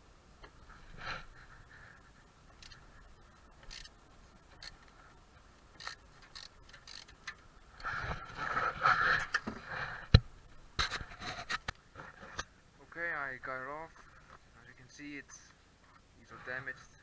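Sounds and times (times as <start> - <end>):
metallic tool clicks and scrapes: 5.8 - 7.3.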